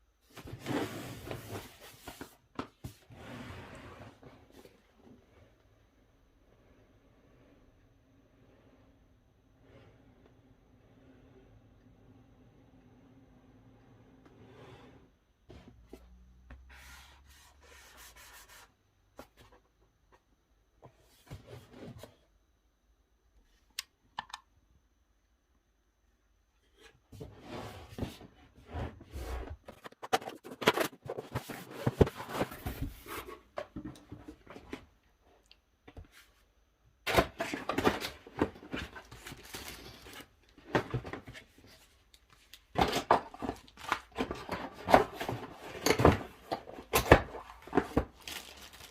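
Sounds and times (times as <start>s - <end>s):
packaging rustling and tearing: 47.9s - 48.9s.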